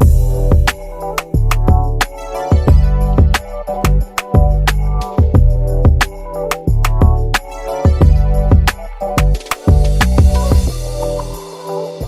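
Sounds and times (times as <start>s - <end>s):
strong bass: 0.0s - 11.4s
background music with steady beat: 0.0s - 12.0s.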